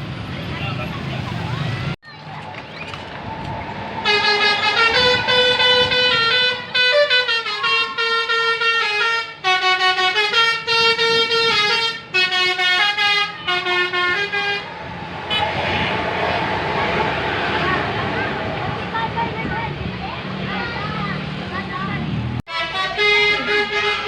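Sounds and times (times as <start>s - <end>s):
bus musical horn playing a tune: 4.0s - 16.0s, 22.5s - 24.0s.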